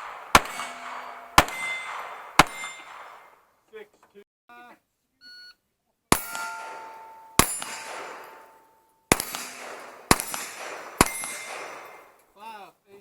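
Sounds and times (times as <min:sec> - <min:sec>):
gunshots: 0:00.0 - 0:03.4, 0:06.1 - 0:12.2
steel target plate ringing: 0:00.0 - 0:03.4, 0:06.1 - 0:12.2.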